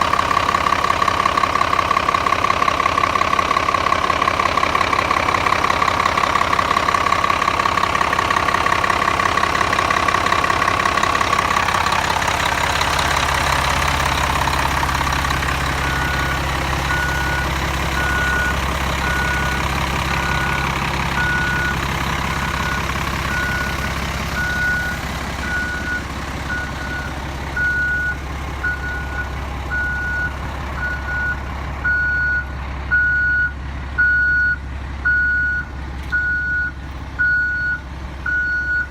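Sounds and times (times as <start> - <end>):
diesel engine running: 0.0 - 38.9
backup alarm beeping: 15.8 - 19.6, 21.2 - 21.8, 22.6 - 38.9.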